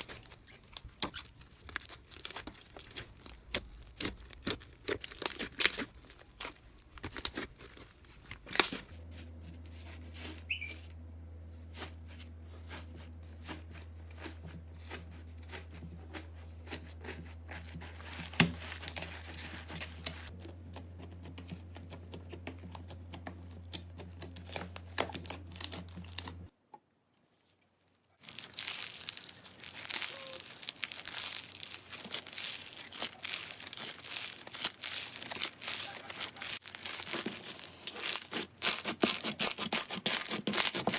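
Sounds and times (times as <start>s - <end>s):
slime crackling and popping: 28.2s - 39.2s.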